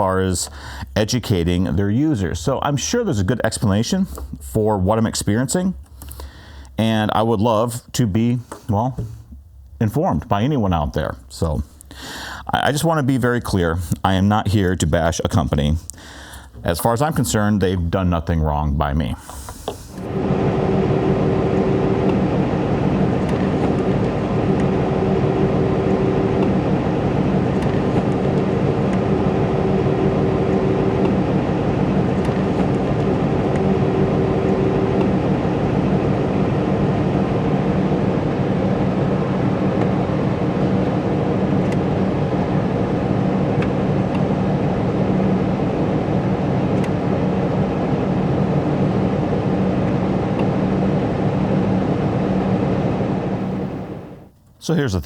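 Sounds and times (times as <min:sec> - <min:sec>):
steady electrical tone: 0:19.4 - 0:55.0.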